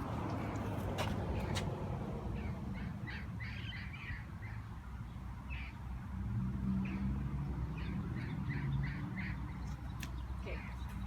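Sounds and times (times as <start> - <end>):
birds chirping: 2.3 - 5.9, 6.8 - 11.0.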